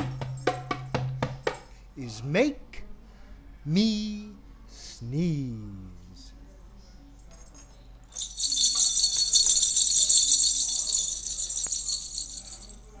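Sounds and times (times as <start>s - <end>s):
hand percussion shaking: 7.5s - 13.0s.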